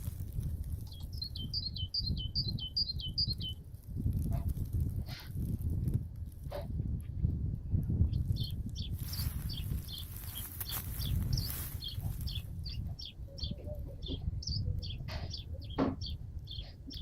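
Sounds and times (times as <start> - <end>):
steady low rumble: 0.0 - 17.0
songbird chirping: 0.1 - 3.8, 8.1 - 17.0.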